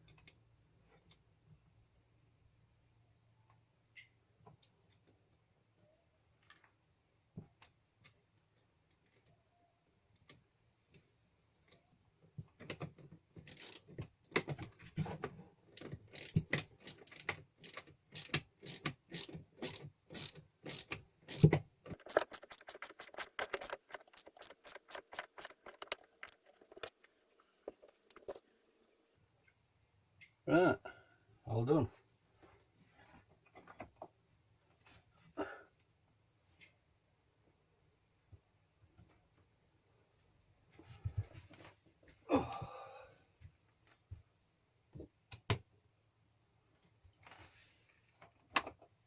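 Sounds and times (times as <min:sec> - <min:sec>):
ratchet wrench clicking: 0:17.1 - 0:27.1, 0:27.7 - 0:28.4.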